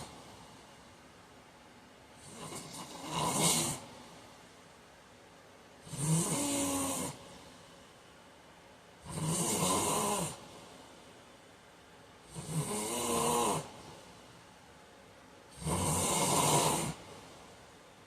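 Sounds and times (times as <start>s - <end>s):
quiet breathing: 0.0s - 4.8s, 5.6s - 18.0s
man snoring: 2.2s - 3.9s, 5.8s - 7.3s, 9.0s - 10.4s, 12.2s - 13.8s, 15.5s - 17.1s.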